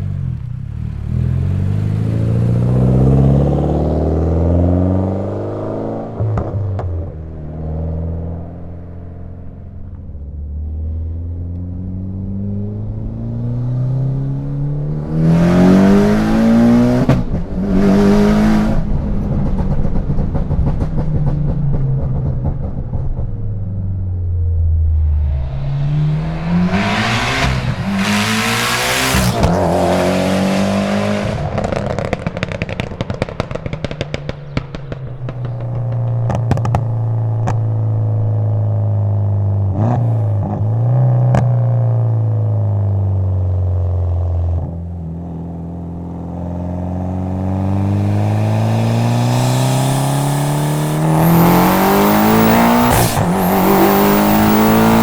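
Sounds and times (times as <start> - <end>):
turbocharged car engine accelerating: 0.0 - 41.5, 45.6 - 55.0
exhaust crackles and pops: 31.3 - 38.4, 47.3 - 55.0.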